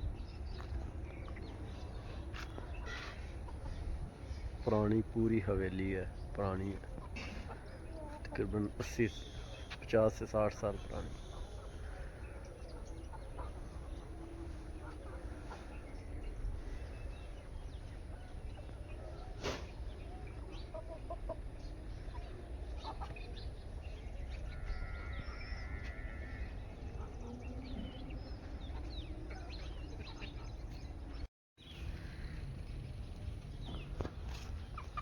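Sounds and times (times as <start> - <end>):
chickens clucking: 1.3 - 5.1, 6.5 - 10.1, 10.7 - 24.7, 33.7 - 35.0.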